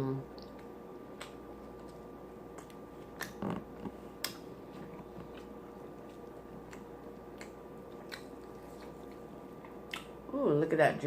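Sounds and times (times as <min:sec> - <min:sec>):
faint steady hum: 0:00.0 - 0:11.0
wet mouth clicks and smacks: 0:00.4 - 0:03.4, 0:06.1 - 0:09.2, 0:09.9 - 0:10.2.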